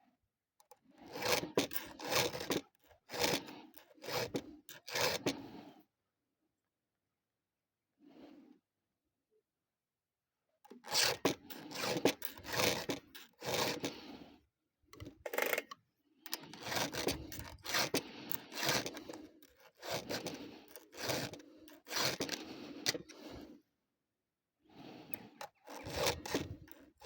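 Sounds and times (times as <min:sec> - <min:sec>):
scraping rasping strokes: 0:00.8 - 0:05.7, 0:10.7 - 0:14.4, 0:15.0 - 0:23.6, 0:24.7 - 0:27.0.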